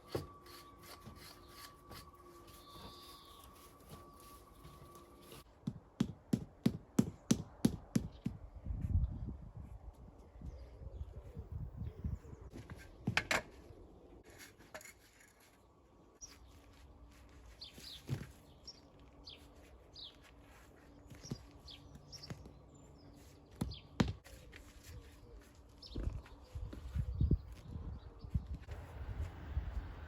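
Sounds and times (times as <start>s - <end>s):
small birds chirping: 17.5s - 28.6s.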